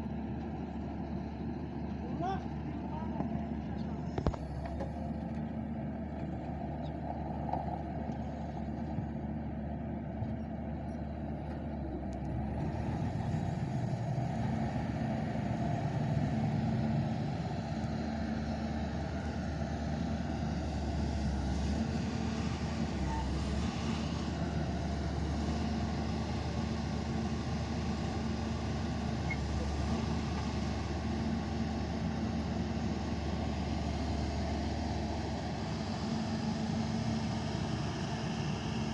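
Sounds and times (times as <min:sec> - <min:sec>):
excavator diesel engine humming: 0:00.0 - 0:38.9.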